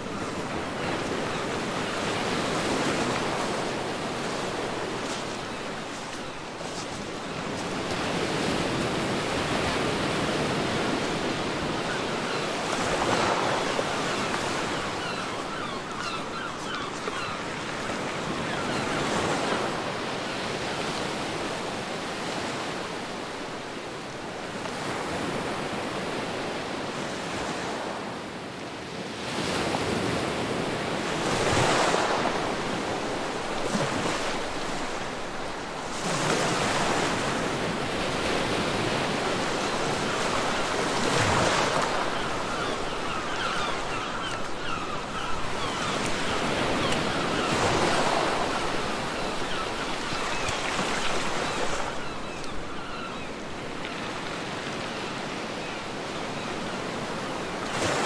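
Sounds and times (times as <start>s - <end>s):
sea waves breaking on beach: 0.0s - 58.0s.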